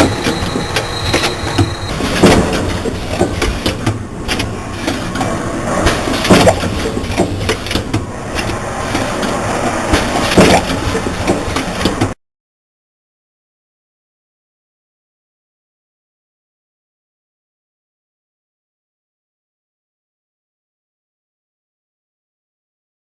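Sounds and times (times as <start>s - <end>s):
machine clunk: 0.0s - 12.2s
machine mechanical clatter: 0.0s - 12.2s.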